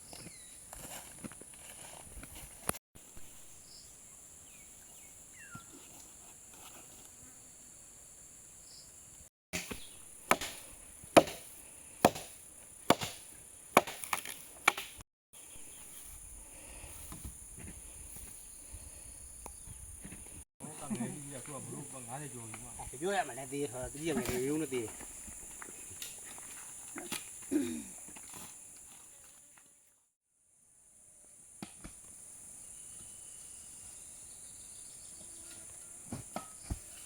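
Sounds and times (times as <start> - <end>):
wood being chopped: 9.6 - 15.0, 36.1 - 36.9.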